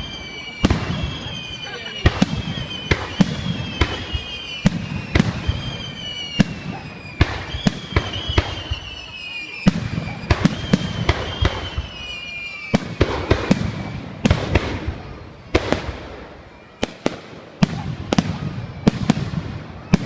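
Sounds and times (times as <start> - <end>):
high whistling tone: 0.0 - 14.2
fireworks bangs: 0.0 - 20.0
fireworks crackling: 0.0 - 20.0.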